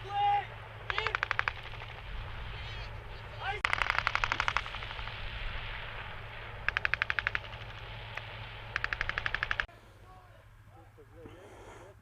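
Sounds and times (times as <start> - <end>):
low rumble: 0.0 - 11.1
machine-gun fire bursts: 0.8 - 2.3, 3.6 - 5.2, 6.6 - 9.7.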